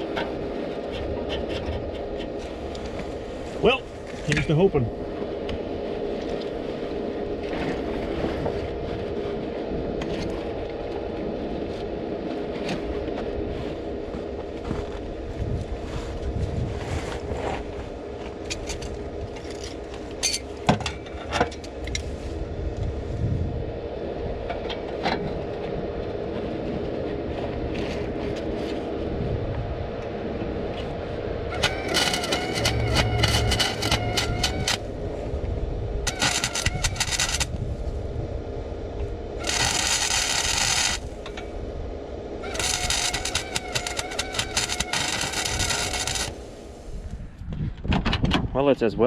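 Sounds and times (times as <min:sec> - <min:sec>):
pitched tone: 0:31.5 - 0:34.8
electric welder crackling buzz: 0:31.5 - 0:35.1, 0:36.0 - 0:37.7, 0:39.0 - 0:41.4, 0:42.4 - 0:46.8.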